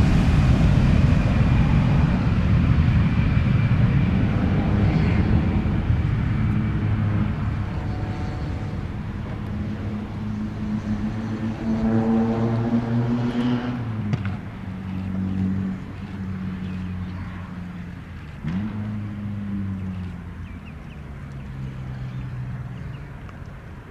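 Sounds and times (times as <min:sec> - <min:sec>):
jet engine rumble: 0:00.0 - 0:18.6
nearer engine hum: 0:00.0 - 0:23.9.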